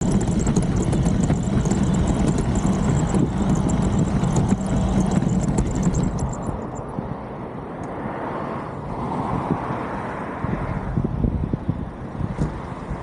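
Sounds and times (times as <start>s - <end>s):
rattle of small clicks: 0.0s - 6.9s
rc car driving on pavement: 0.0s - 7.1s.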